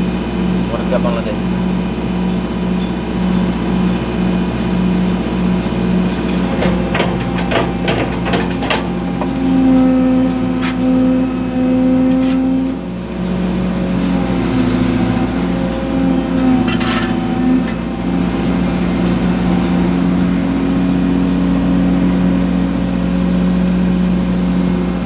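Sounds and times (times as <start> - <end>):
diesel engine running: 0.0 - 25.0
high pulsing tone: 8.5 - 22.7.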